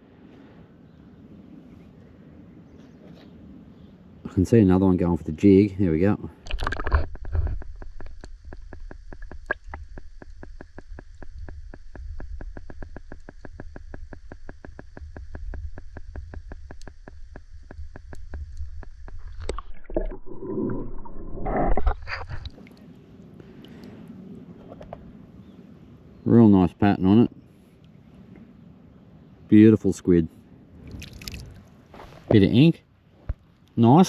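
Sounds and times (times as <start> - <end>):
squid squirting water: 6.4 - 20.8, 30.9 - 31.7.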